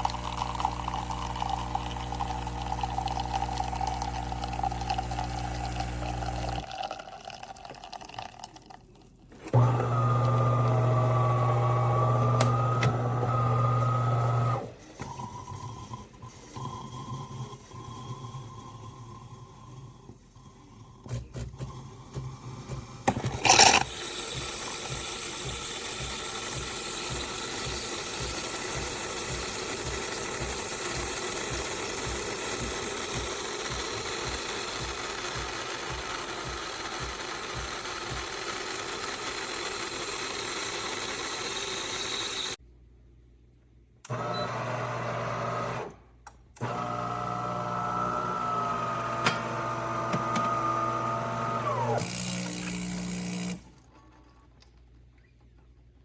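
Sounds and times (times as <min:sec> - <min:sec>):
espresso machine whirring: 0:00.0 - 0:08.6, 0:09.4 - 0:14.8, 0:23.1 - 0:42.6, 0:44.1 - 0:45.9, 0:46.6 - 0:53.8.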